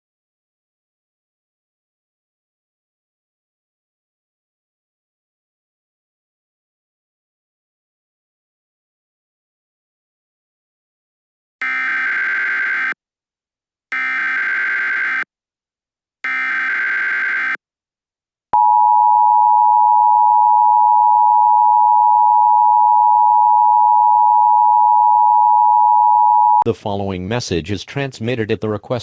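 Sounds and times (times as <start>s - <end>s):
buzzy digital data bursts: 11.6s - 13.0s, 13.9s - 15.2s, 16.3s - 17.6s
two-tone attention signal: 11.6s - 13.0s, 13.9s - 15.2s, 16.2s - 17.6s.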